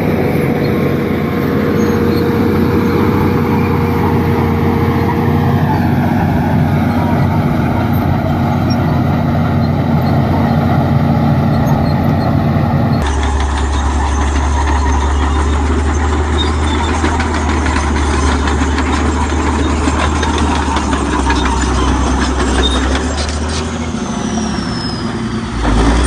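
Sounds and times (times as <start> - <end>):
bulldozer diesel engine running: 0.0 - 26.0
fast clattering: 13.0 - 23.8.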